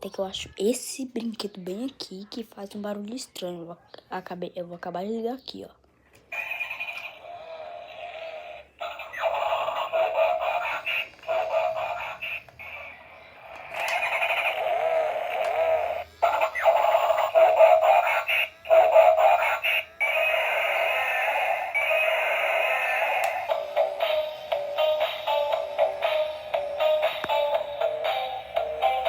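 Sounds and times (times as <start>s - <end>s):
tinny electronic toy tune: 6.3s - 29.0s.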